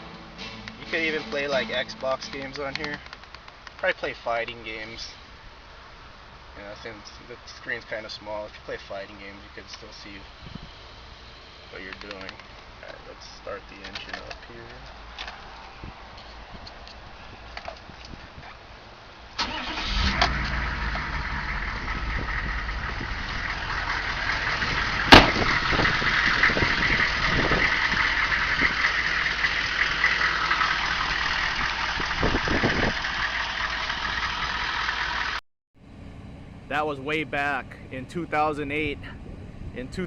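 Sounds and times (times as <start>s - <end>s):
sharp click: 2.2s - 3.9s
diesel engine starting and rumbling: 15.8s - 40.0s.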